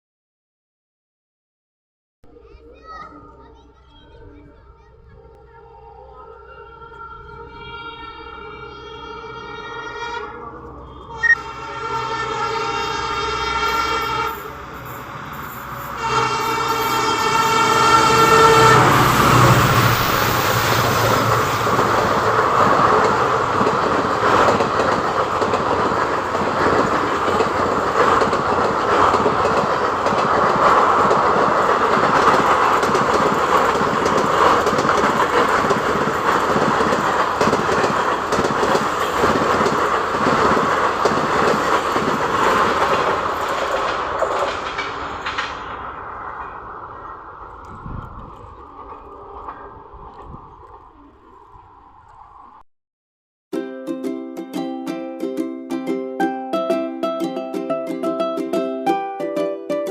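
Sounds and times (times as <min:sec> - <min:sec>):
train horn: 0:05.8 - 0:15.1, 0:15.8 - 0:19.9
train wheels clattering over rails: 0:18.1 - 0:50.8.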